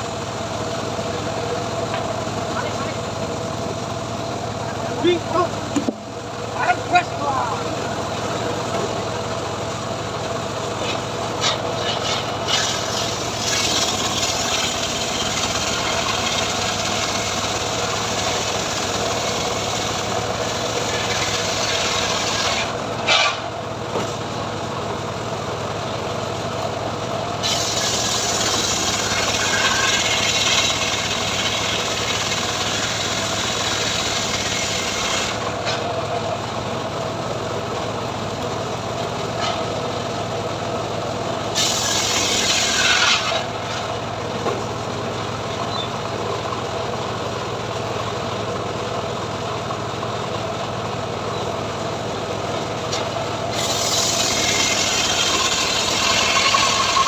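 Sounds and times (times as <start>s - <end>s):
engine hum: 0.0s - 57.0s
saw blade rasping through wood: 10.8s - 23.5s, 27.4s - 35.9s, 41.5s - 44.0s, 53.5s - 57.0s.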